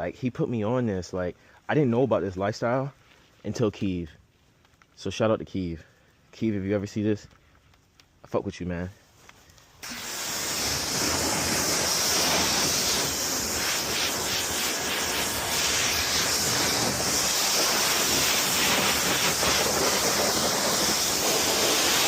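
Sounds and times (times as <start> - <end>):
pressure washer jet on car: 9.8 - 22.0.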